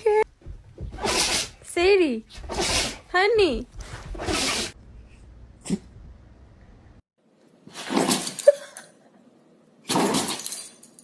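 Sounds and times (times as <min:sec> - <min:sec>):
dog sneezing: 0:01.0 - 0:01.6, 0:02.3 - 0:03.0, 0:04.2 - 0:04.8.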